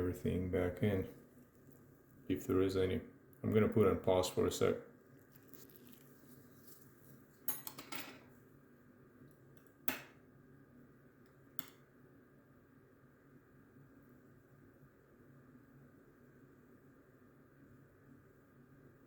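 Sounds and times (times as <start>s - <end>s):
faint background hum: 0.0s - 19.0s
small tools clinking and clicking: 7.5s - 8.3s.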